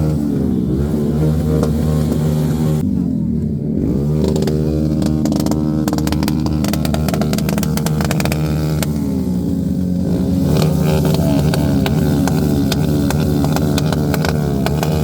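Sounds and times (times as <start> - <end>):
motorcycle engine running: 0.0 - 15.0
fast rattle of clicks: 4.2 - 9.0, 10.6 - 15.0.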